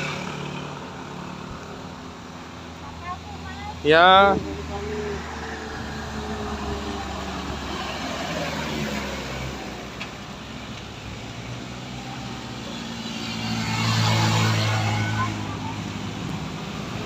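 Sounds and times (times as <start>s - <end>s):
vehicle engine droning: 0.0s - 17.0s.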